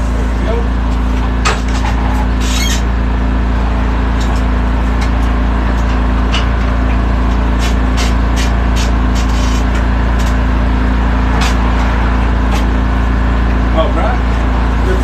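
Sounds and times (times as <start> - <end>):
portable generator humming: 0.0 - 15.0.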